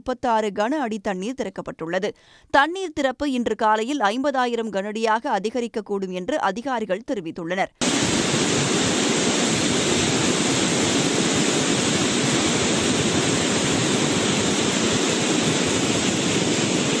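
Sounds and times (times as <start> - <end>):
river water rushing: 7.8 - 17.0.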